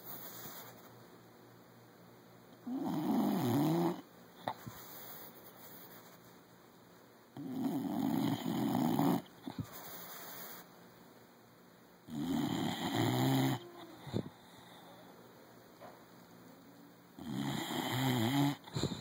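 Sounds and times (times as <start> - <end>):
dog snoring: 2.6 - 5.3, 7.4 - 10.6, 12.1 - 14.5, 17.2 - 19.0
dog breathing quietly: 18.6 - 19.0.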